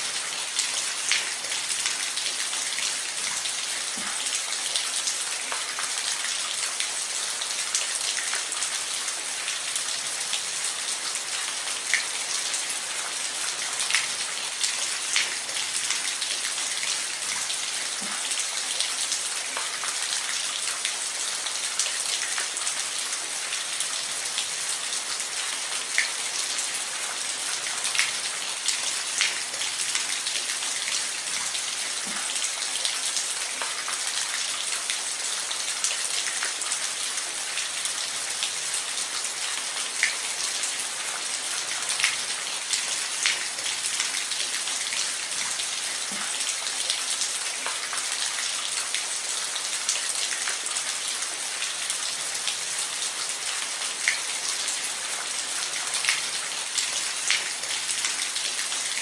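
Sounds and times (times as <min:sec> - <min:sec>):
rain on a roof: 0:00.0 - 0:59.0.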